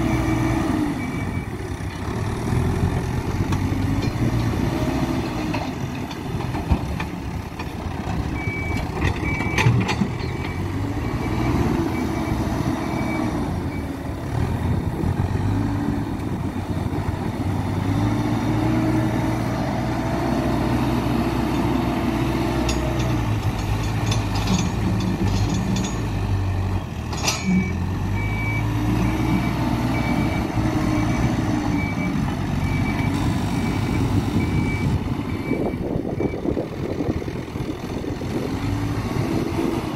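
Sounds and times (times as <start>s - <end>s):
diesel engine working under load: 0.0s - 39.9s
reversing alarm beeping: 8.4s - 13.9s, 27.4s - 36.4s.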